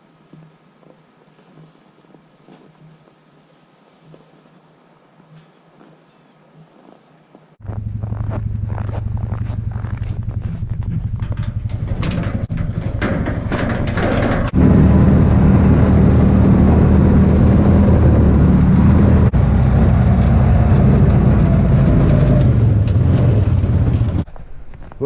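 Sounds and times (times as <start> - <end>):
engine running: 7.6 - 24.3.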